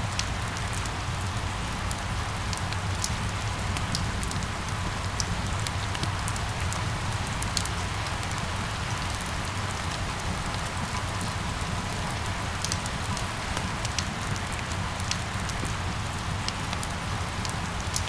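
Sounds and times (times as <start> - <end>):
steady rain falling: 0.0 - 18.0.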